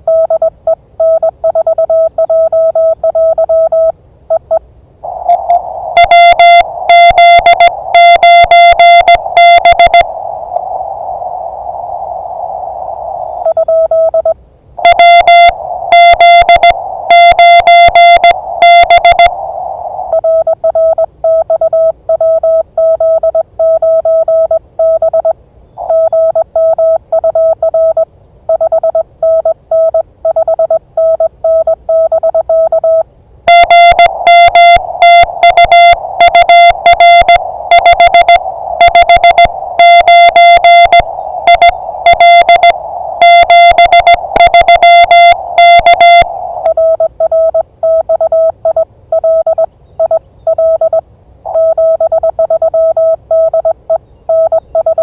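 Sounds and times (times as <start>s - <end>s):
morse code tone: 0.0s - 10.3s, 12.2s - 55.0s
radio hiss: 5.0s - 20.6s, 24.8s - 28.0s, 33.5s - 47.2s.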